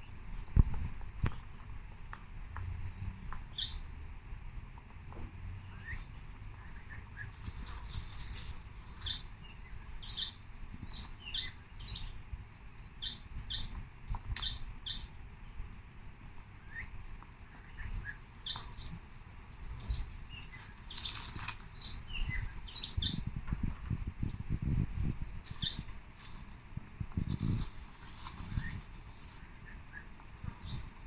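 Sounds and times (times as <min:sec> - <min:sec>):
low steady rumble: 0:00.0 - 0:31.0
small birds chirping: 0:00.0 - 0:31.0.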